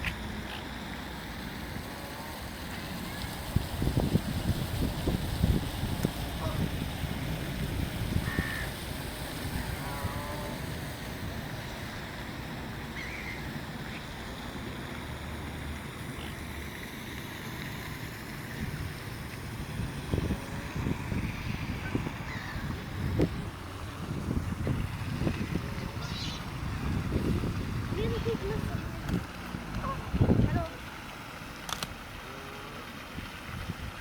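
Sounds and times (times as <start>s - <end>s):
wind buffeting microphone: 2.5s - 11.7s, 18.4s - 30.8s, 33.1s - 34.0s
short high bird calls: 13.0s - 13.4s.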